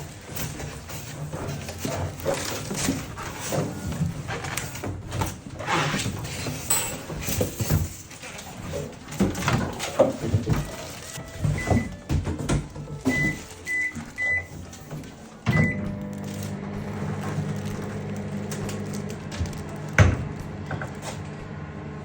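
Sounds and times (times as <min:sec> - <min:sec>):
knocks and clatter of handling: 0:00.0 - 0:16.5, 0:17.2 - 0:21.4
microwave keypad beeps: 0:11.1 - 0:12.1, 0:13.1 - 0:14.5, 0:15.4 - 0:16.0.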